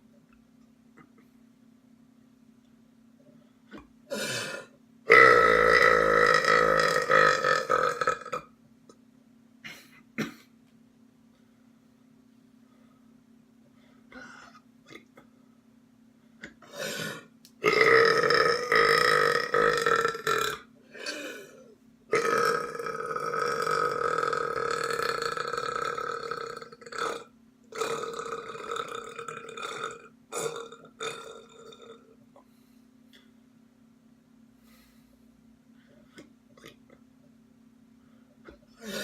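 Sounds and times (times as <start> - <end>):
person burping: 3.7 - 8.5, 9.6 - 10.5, 14.1 - 15.3, 16.4 - 32.2, 36.5 - 37.0, 38.5 - 39.0.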